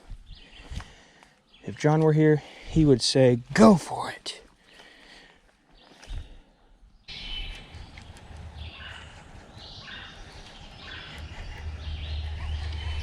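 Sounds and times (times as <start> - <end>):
bird singing: 6.9 - 13.0.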